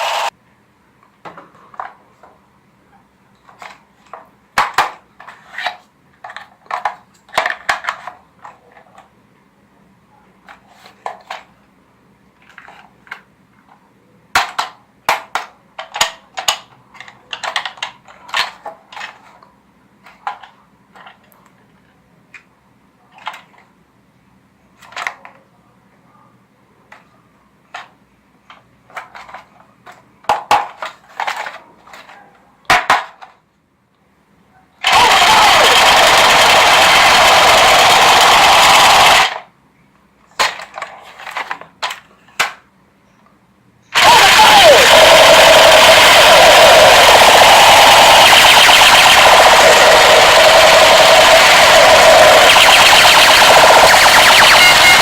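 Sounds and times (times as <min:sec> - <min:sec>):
toy guns clicking: 0:34.8 - 0:39.4, 0:44.0 - 0:55.0.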